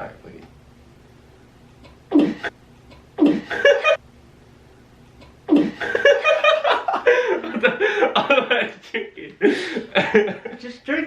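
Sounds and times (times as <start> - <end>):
people laughing: 5.7 - 10.7.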